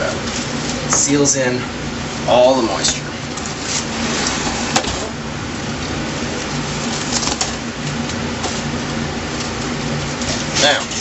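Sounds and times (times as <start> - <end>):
kitchen equipment hum: 0.0 - 11.0
plastic wrap crackling: 5.8 - 11.0.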